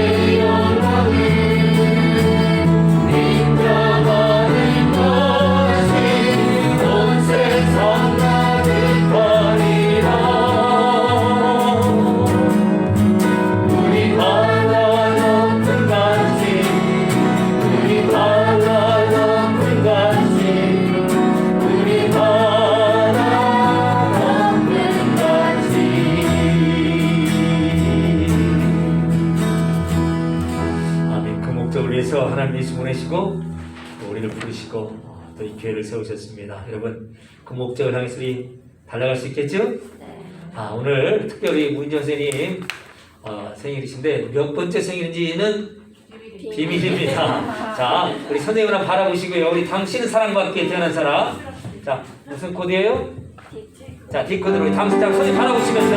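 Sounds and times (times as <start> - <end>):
group singing praise song: 0.0 - 29.4, 54.5 - 55.9
live instrumental accompaniment: 0.1 - 31.2, 54.4 - 55.9.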